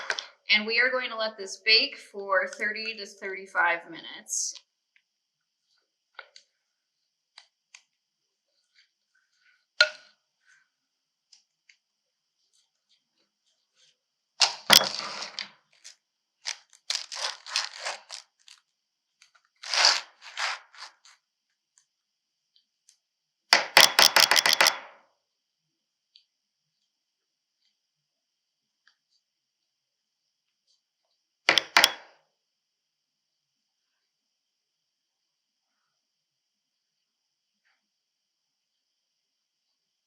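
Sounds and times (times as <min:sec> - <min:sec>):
sharp click: 0:23.6 - 0:24.9, 0:31.5 - 0:32.1.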